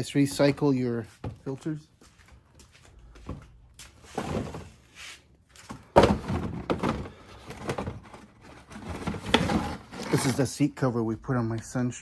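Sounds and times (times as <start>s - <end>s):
rustling and handling: 0.3s - 10.5s.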